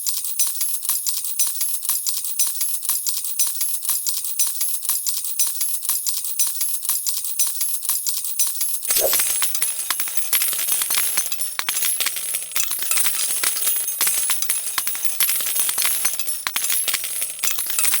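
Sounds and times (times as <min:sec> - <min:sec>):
coins pouring onto metal tray: 0:08.9 - 0:18.0.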